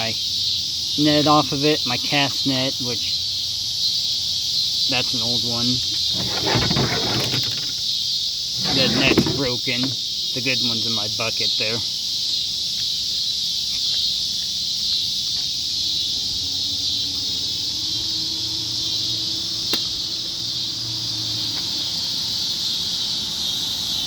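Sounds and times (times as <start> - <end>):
insects chirping: 0.0 - 24.0
sharp click: 19.7 - 19.9.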